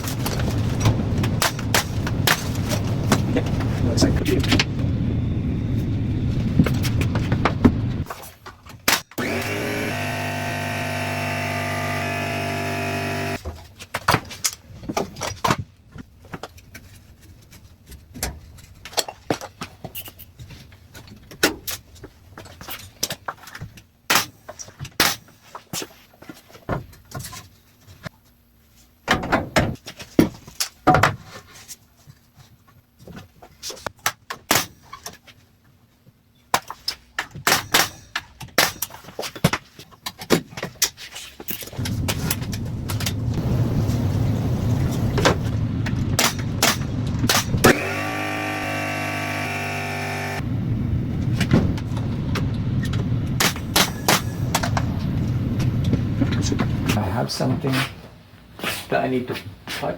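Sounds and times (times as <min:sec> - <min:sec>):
power tool motor running: 0:09.2 - 0:13.4, 0:47.7 - 0:50.4.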